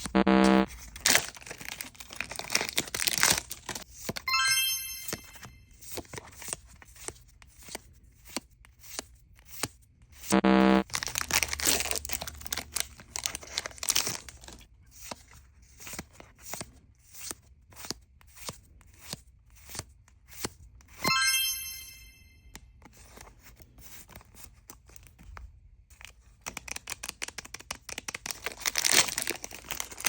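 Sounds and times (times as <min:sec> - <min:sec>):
short pitched tone: 0:00.2 - 0:00.7, 0:10.3 - 0:10.8, 0:21.1 - 0:22.4
foil wrapper crinkling and tearing: 0:00.7 - 0:03.9, 0:10.8 - 0:14.6, 0:26.5 - 0:30.0.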